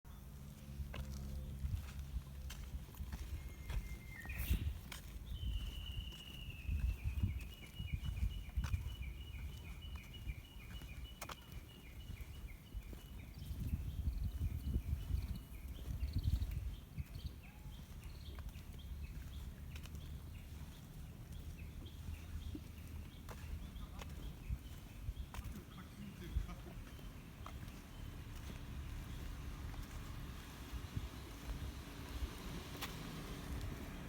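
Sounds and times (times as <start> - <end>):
wind rumble on microphone: 0.8 - 26.7, 28.7 - 34.0.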